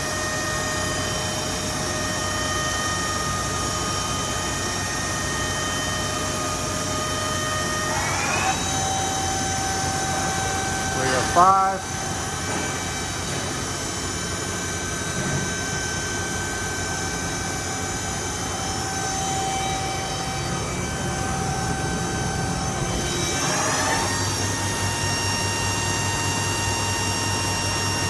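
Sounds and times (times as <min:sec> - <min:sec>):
machine spindle whine: 0:00.0 - 0:28.0.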